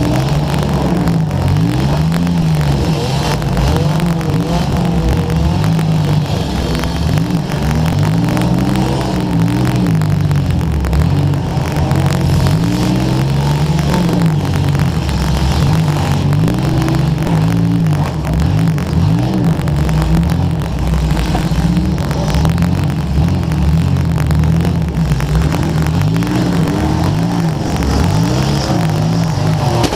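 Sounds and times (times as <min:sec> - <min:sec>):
car engine revving hard: 0:00.0 - 0:29.9
crackling microphone static: 0:00.0 - 0:29.9.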